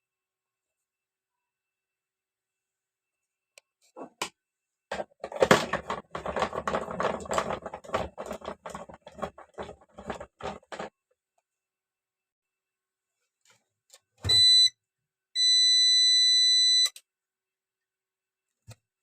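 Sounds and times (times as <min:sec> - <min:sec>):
clicks knocks and scrapes of parts: 0:04.9 - 0:10.9.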